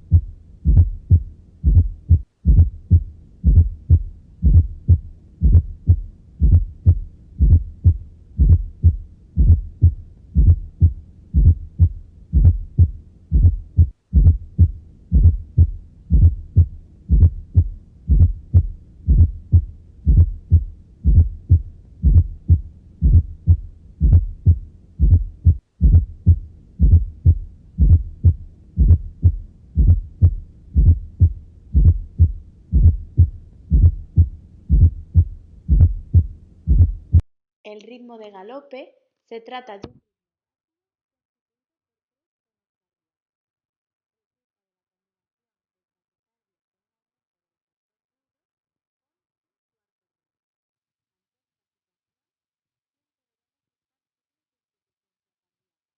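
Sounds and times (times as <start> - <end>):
heartbeat thuds: 0.0 - 37.2.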